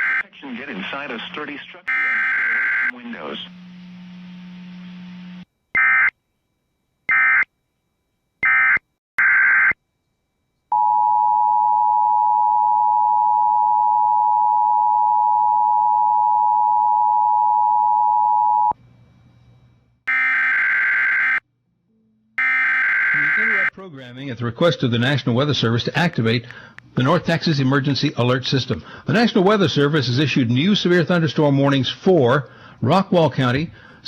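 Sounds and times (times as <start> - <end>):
buzzy digital data bursts: 22.4 - 23.7
two-tone attention signal: 22.4 - 23.7.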